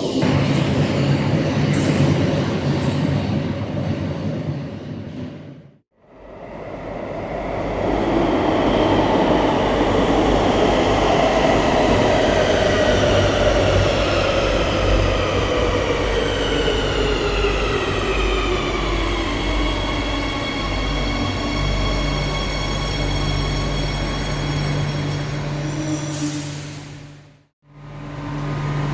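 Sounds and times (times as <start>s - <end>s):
wheel and rail rumble: 6.2s - 28.9s.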